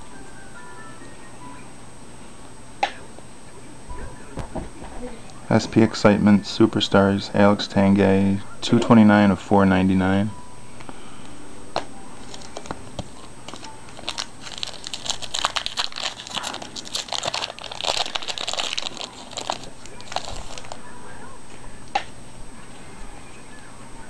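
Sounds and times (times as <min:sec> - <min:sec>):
foil wrapper tearing and crinkling: 0:13.5 - 0:20.8.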